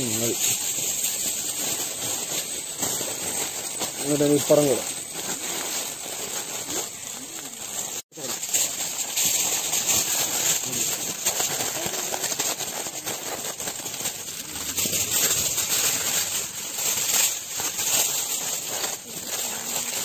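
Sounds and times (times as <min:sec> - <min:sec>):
aluminium foil crinkling: 0:00.0 - 0:20.0.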